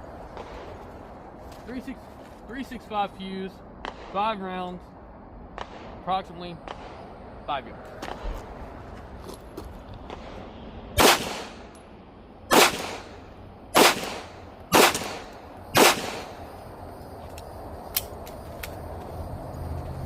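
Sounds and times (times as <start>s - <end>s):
pistol shots with echo: 3.8s - 4.5s, 5.5s - 7.1s, 11.0s - 11.7s, 12.5s - 16.4s.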